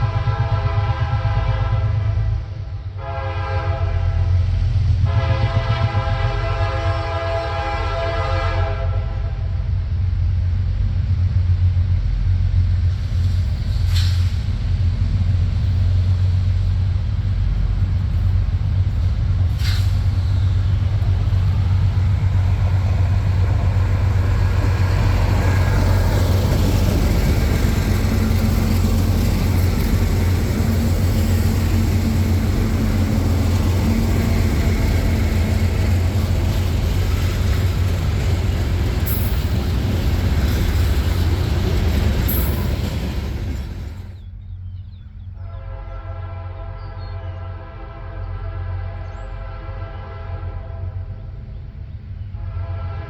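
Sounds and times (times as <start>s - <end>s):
locomotive horn blasts: 0.0s - 4.4s, 5.0s - 9.6s, 45.4s - 51.3s, 52.3s - 53.0s
diesel engine rumble: 9.4s - 45.3s.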